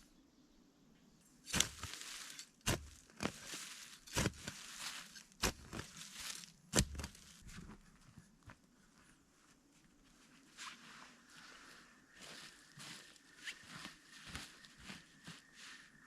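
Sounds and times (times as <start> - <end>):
crunching of wood and snow: 1.4 - 9.0
dry wood snapping: 1.5 - 7.3.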